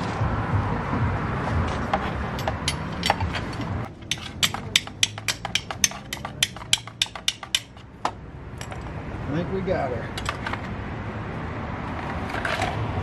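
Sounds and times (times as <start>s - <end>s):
sharp metallic ratchet clicks: 2.4s - 7.8s.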